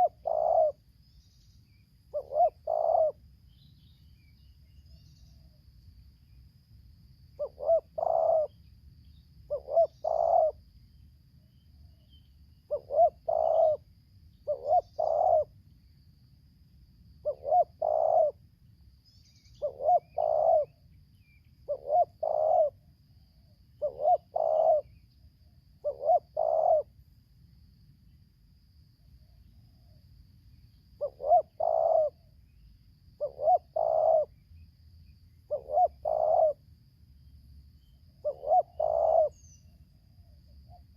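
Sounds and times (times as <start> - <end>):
dove cooing: 0.0 - 0.8, 2.1 - 3.2, 7.4 - 8.6, 9.5 - 10.6, 12.7 - 15.6, 17.2 - 18.4, 19.6 - 20.8, 21.6 - 22.9, 23.8 - 25.0, 25.8 - 26.9, 31.0 - 32.3, 33.2 - 34.4, 35.5 - 36.6, 38.2 - 39.6.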